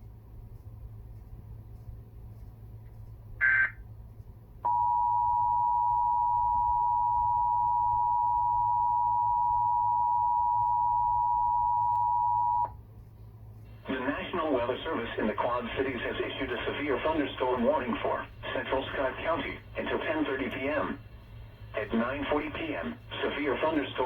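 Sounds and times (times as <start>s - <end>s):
low hum: 0.0s - 24.0s.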